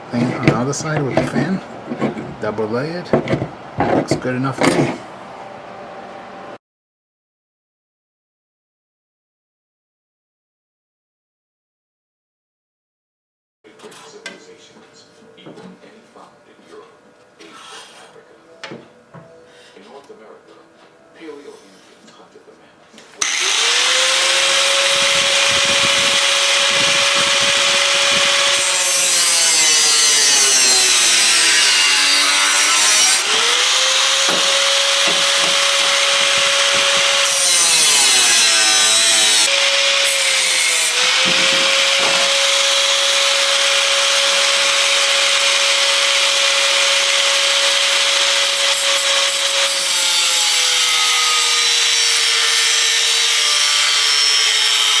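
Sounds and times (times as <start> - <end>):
power tool whining and cutting: 23.2 - 55.0.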